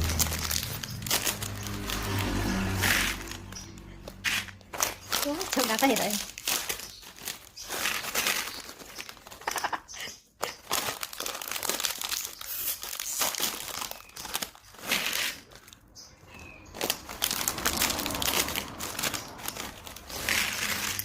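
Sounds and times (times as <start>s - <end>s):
crinkly plastic packaging opened: 0.0s - 21.0s.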